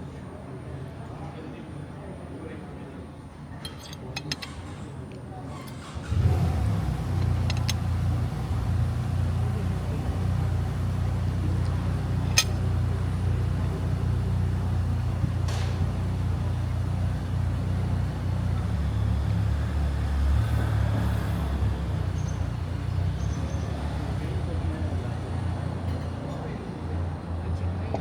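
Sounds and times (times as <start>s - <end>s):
low rumble of town ambience: 0.0s - 28.0s.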